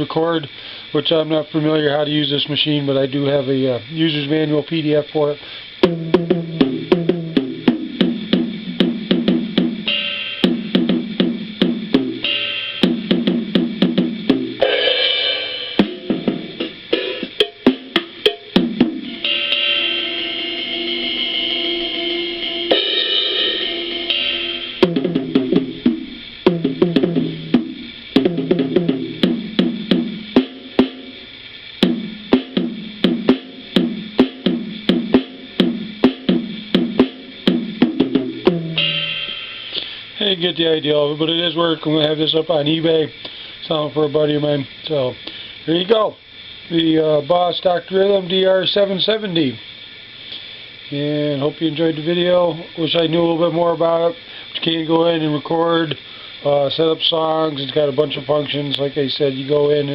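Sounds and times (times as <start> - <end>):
drum machine pattern through speaker: 5.8 - 19.4, 22.7 - 40.0.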